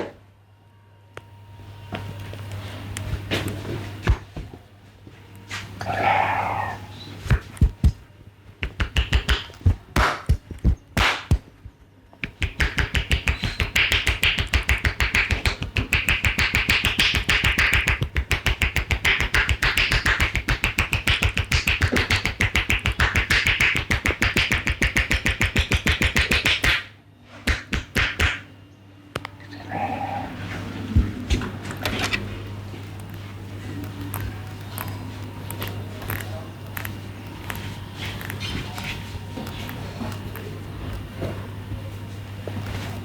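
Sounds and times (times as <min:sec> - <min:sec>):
hands slapping head and back: 0:07.2 - 0:11.5, 0:12.2 - 0:28.5.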